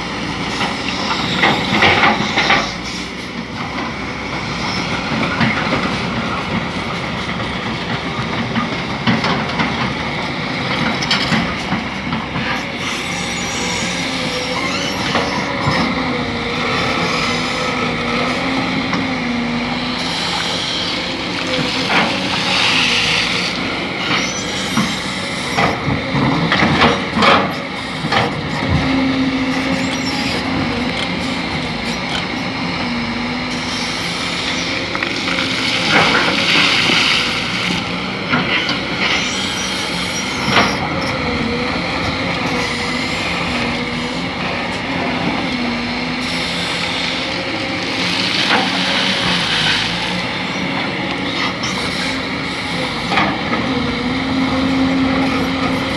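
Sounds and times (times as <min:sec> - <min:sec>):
excavator engine running: 0:00.0 - 0:55.9.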